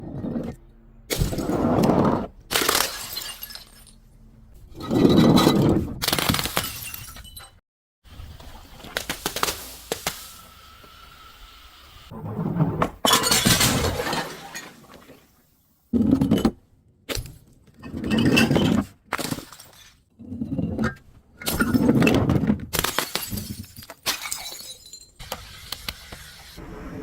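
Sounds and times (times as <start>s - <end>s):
glass bottles shattering: 2.5s - 4.0s, 6.1s - 7.6s, 13.1s - 15.1s, 18.1s - 20.0s, 21.4s - 25.3s
glass shards falling: 2.5s - 4.0s, 22.8s - 25.3s.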